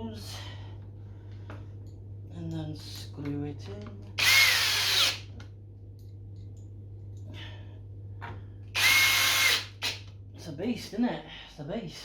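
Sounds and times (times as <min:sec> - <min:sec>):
steady low hum: 0:00.0 - 0:12.0
cordless drill motor whine: 0:04.2 - 0:05.2, 0:08.8 - 0:10.0.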